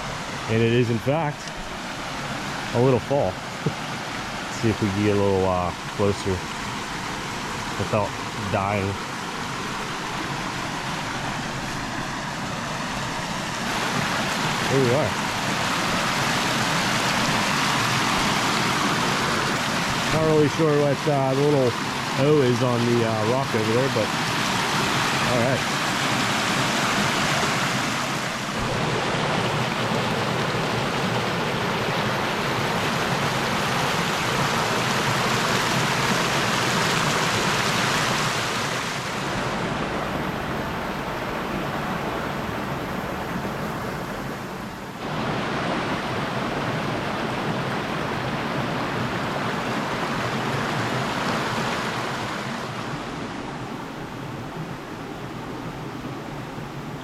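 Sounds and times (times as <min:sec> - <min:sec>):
waterfall rushing and splashing: 0:00.0 - 0:57.0.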